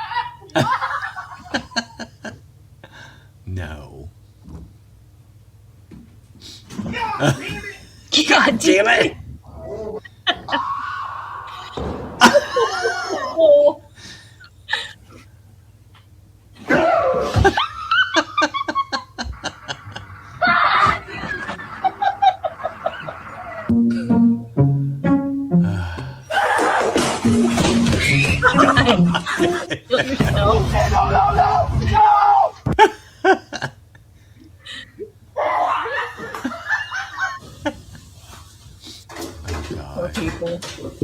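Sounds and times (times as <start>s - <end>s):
hearty laughter: 0.0s - 3.2s, 7.0s - 8.0s, 9.8s - 10.8s, 11.5s - 15.3s, 16.6s - 24.1s, 26.2s - 27.3s, 27.9s - 30.6s, 32.7s - 38.4s.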